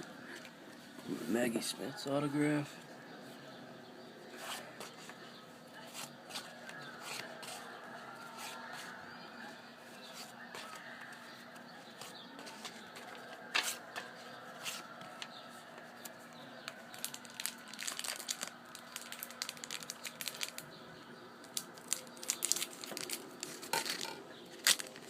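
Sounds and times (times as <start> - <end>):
card pack wrappers tearing and crinkling: 16.7 - 20.7, 21.4 - 25.0
wrapper snap: 16.9 - 20.7, 21.4 - 25.0.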